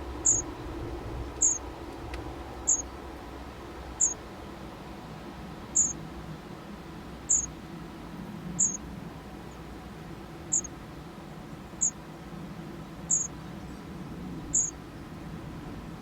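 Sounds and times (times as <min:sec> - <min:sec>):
baby bird peeping: 0:00.2 - 0:00.5, 0:01.4 - 0:01.6, 0:02.6 - 0:02.9, 0:04.0 - 0:04.2, 0:05.7 - 0:06.0, 0:07.2 - 0:07.6, 0:08.6 - 0:08.8, 0:10.5 - 0:10.7, 0:11.8 - 0:12.0, 0:13.1 - 0:13.4, 0:14.5 - 0:14.8.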